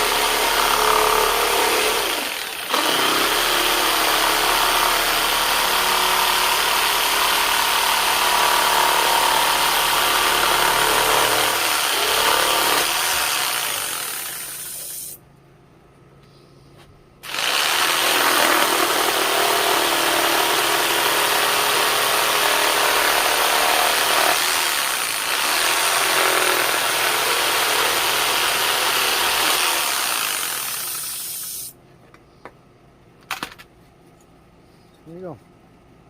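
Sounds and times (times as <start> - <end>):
power tool running against wood: 0.0 - 14.8, 17.2 - 31.2.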